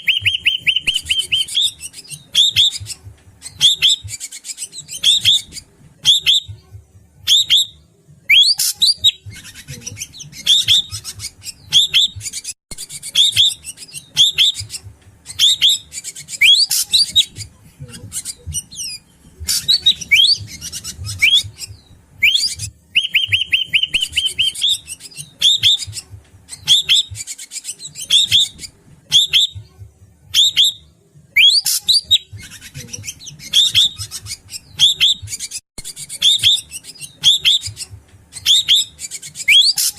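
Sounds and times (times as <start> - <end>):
bird whistling sharp notes: 0.0 - 2.8, 7.3 - 17.3, 19.5 - 26.0, 31.4 - 32.4, 33.0 - 39.9.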